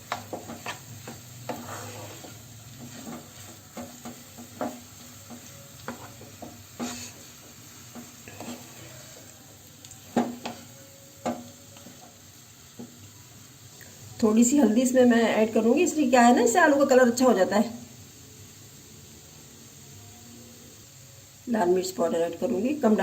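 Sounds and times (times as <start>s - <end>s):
spatula scraping frying pan: 0.0s - 9.4s, 10.0s - 12.2s
faint oil sizzle: 0.0s - 23.0s.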